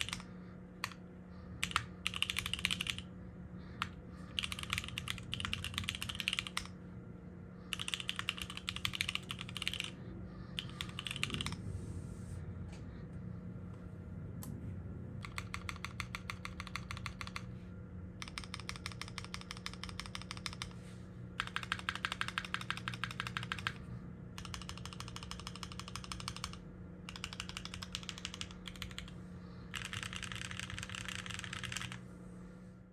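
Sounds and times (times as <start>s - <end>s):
mechanical keyboard typing: 0.0s - 1.0s, 1.6s - 3.1s, 3.8s - 6.8s, 7.7s - 10.0s, 10.6s - 11.6s, 15.2s - 17.5s, 18.2s - 20.8s, 21.4s - 23.8s, 24.4s - 29.1s, 29.7s - 32.0s
faint steady hum: 0.0s - 32.9s.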